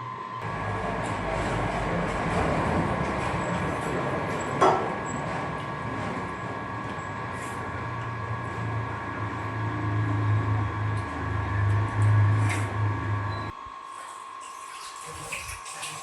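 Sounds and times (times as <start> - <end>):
low mechanical drone: 0.0 - 14.0
high mechanical whine: 0.0 - 16.0.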